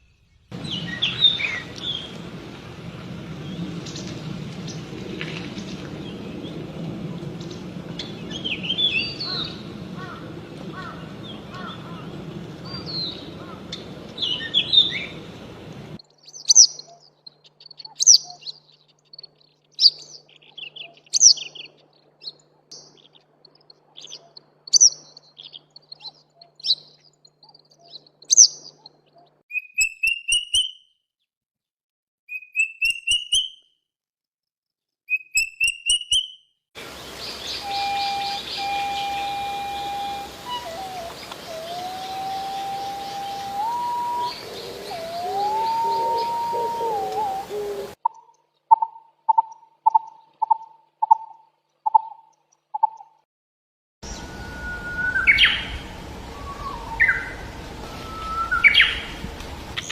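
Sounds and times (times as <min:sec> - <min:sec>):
background hiss: 0:00.0 - 0:26.1, 0:36.8 - 0:48.0, 0:54.0 - 0:59.9
songbirds chirping: 0:00.0 - 0:30.2, 0:36.8 - 0:53.2, 0:54.0 - 0:59.9
bird trills: 0:08.0 - 0:15.2, 0:16.1 - 0:30.9, 0:37.2 - 0:53.2, 0:54.0 - 0:59.9.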